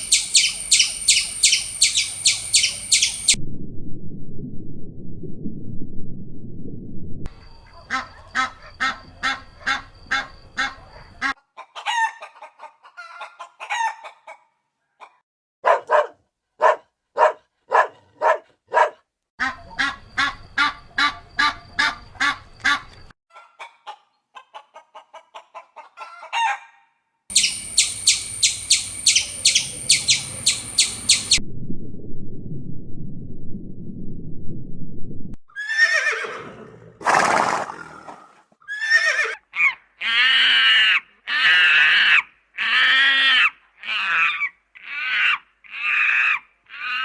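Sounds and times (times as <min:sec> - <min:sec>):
high-pitched rapid chirping: 0:00.0 - 0:03.4, 0:27.3 - 0:31.4
chickens clucking: 0:07.7 - 0:14.4, 0:19.4 - 0:26.6.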